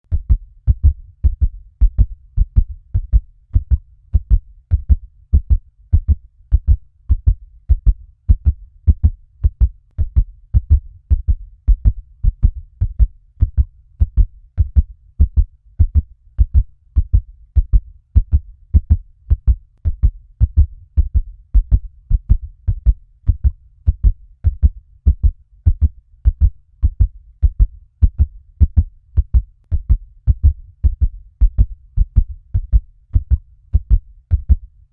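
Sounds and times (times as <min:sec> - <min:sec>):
fast heartbeat thumps: 0:00.1 - 0:34.9.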